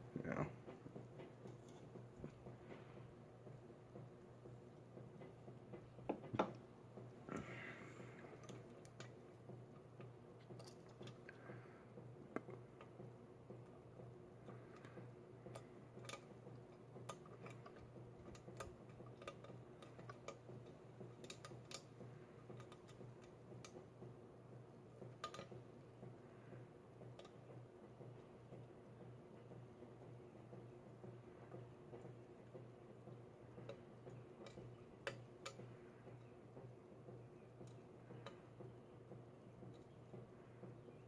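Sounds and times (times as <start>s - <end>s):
low steady hum: 0.0s - 41.0s
lock pick clicking on pins: 15.5s - 23.8s, 25.1s - 25.6s.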